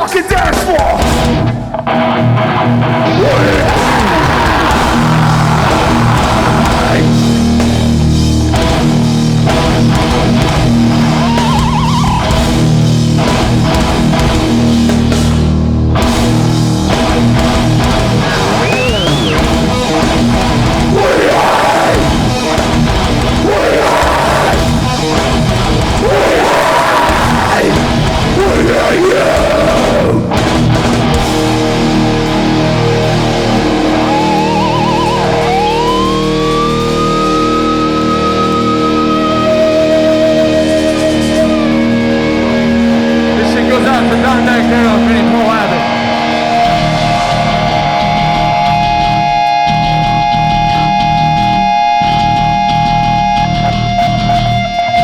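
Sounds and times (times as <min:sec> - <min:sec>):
metal band playing live: 0:00.0 - 0:55.0
shouted vocals: 0:03.0 - 0:07.4, 0:11.0 - 0:12.4, 0:18.2 - 0:30.4, 0:39.2 - 0:49.5.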